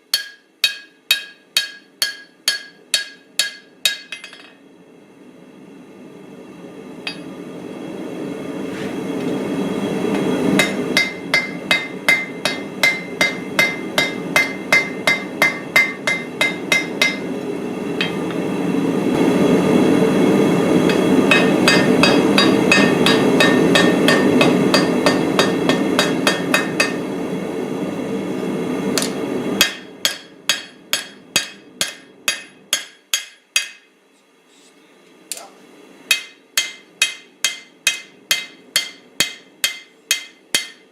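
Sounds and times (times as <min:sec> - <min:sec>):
hammer striking steel on anvil: 0:00.0 - 0:04.6, 0:07.0 - 0:07.3, 0:10.6 - 0:17.3, 0:18.0 - 0:18.4, 0:20.9 - 0:27.1, 0:29.0 - 0:33.9, 0:36.1 - 0:40.9.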